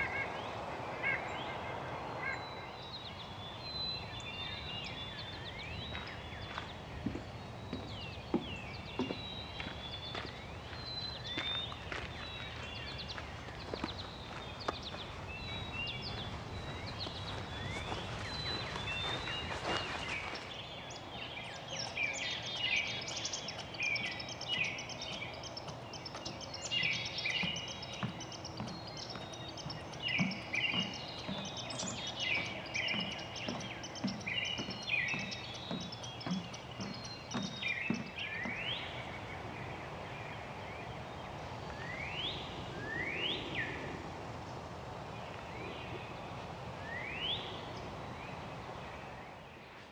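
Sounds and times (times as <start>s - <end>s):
upward sweeping bird calls: 0.0s - 21.1s
outdoor background noise: 0.0s - 49.9s
songbirds chirping and trilling: 0.0s - 49.9s.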